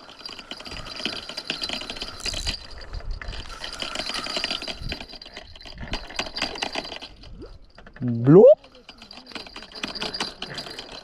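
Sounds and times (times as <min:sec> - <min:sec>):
fishing reel whirring and clicking: 0:00.0 - 0:07.0.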